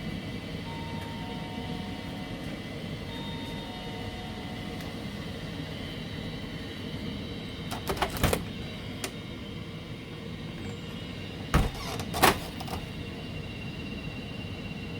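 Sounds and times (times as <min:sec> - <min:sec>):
steady background hum: 0:00.0 - 0:14.9
door latch clicks and knocks: 0:11.6 - 0:12.8.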